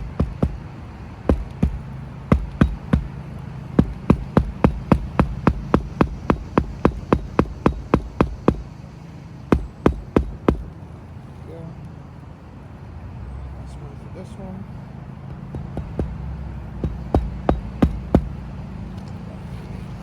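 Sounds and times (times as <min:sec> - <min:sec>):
hammer driving roofing nails: 0:00.0 - 0:08.8, 0:09.5 - 0:10.7, 0:15.3 - 0:18.7.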